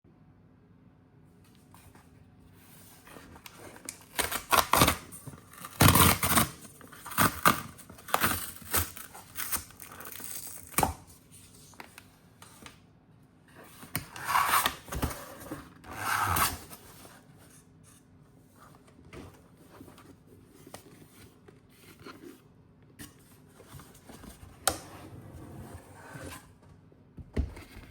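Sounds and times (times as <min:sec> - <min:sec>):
packaging tearing and rustling: 0:03.0 - 0:11.8.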